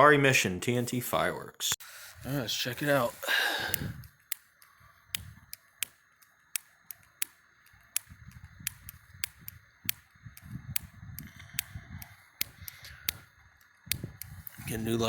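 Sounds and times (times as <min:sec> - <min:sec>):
lighter clicking: 0:03.7 - 0:14.6.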